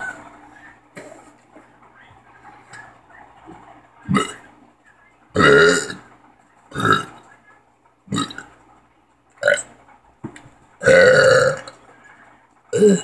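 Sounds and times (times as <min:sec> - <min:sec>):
person burping: 0:04.1 - 0:04.4, 0:05.4 - 0:06.0, 0:06.7 - 0:07.2, 0:08.1 - 0:08.4, 0:09.4 - 0:09.7, 0:10.8 - 0:11.7, 0:12.7 - 0:13.0.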